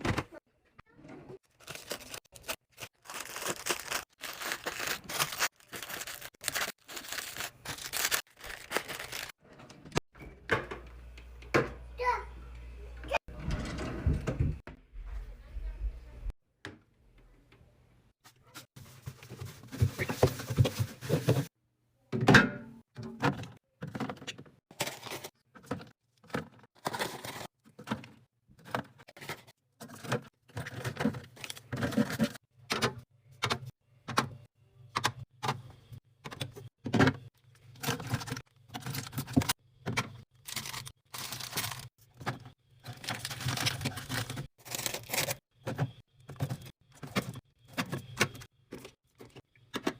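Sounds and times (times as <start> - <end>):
packaging rustling: 1.5 - 9.4, 40.5 - 41.9
containers and bottles clattering: 22.2 - 33.7.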